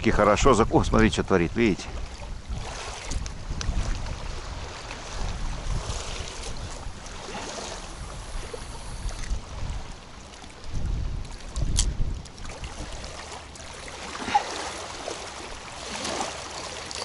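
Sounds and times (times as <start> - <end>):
strong wind on microphone: 0.0 - 10.0, 10.6 - 12.9.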